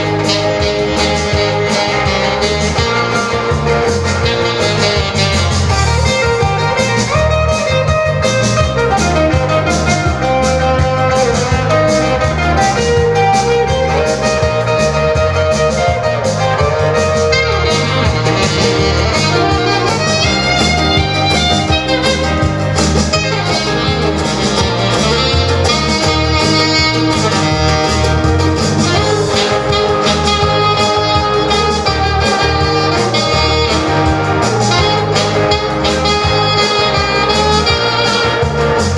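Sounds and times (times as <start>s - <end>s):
music with guitar and horn: 0.0s - 38.9s.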